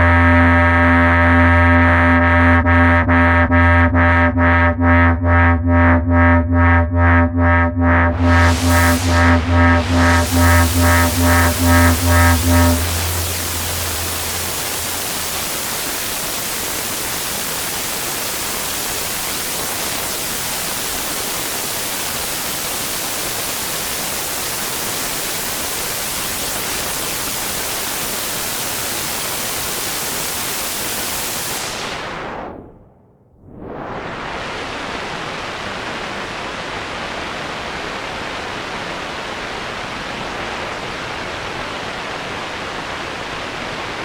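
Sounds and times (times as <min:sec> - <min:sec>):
pulsing low synth tone: 0:00.0 - 0:16.5
synthesizer noise hiss: 0:08.1 - 0:32.8, 0:33.5 - 0:44.0.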